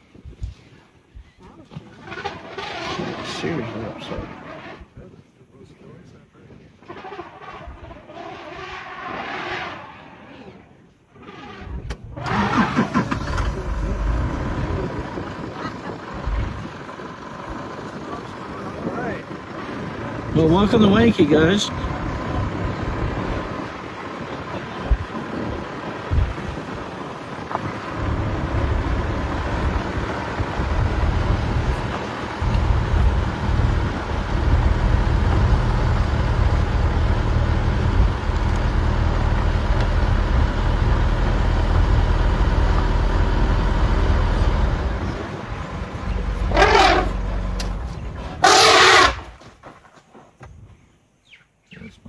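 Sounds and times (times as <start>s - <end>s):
elephant trumpeting: 2.0s - 4.9s, 6.8s - 10.6s, 11.2s - 14.9s, 27.5s - 38.9s, 45.0s - 49.4s
vehicle engine droning: 11.7s - 49.3s.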